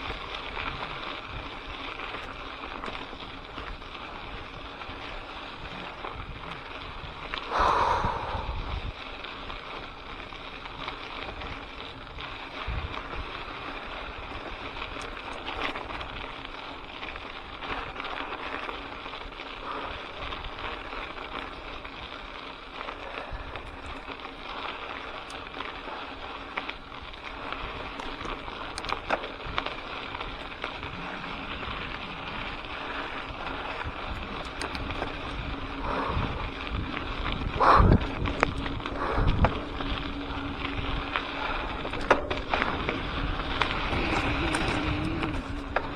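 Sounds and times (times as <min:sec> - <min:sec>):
bike tyre noise on dirt: 0:00.0 - 0:45.9
wind on microphone: 0:05.6 - 0:09.1, 0:30.7 - 0:45.9.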